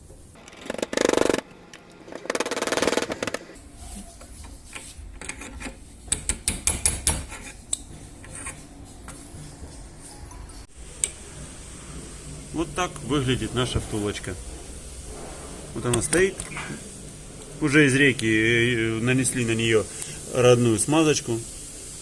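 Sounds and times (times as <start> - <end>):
harsh buzzing bursts: 0.4 - 3.6.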